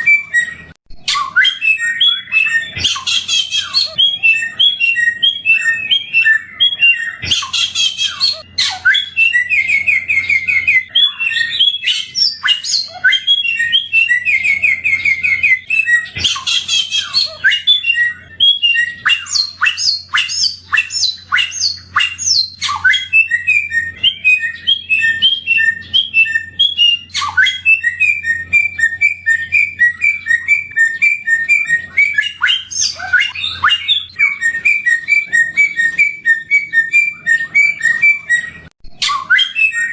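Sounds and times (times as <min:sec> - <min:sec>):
songbird singing chirps and trills: 0:00.0 - 0:39.9.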